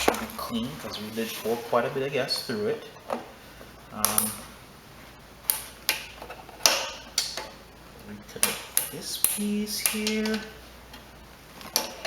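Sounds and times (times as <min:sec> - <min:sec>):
small parts and tools clicking: 0:08.4 - 0:11.0.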